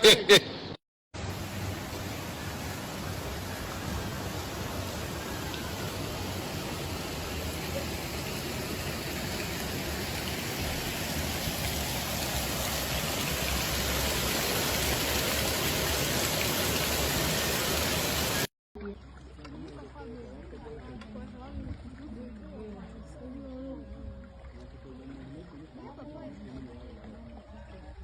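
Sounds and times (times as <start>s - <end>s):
heavy rain pouring: 1.2s - 18.5s.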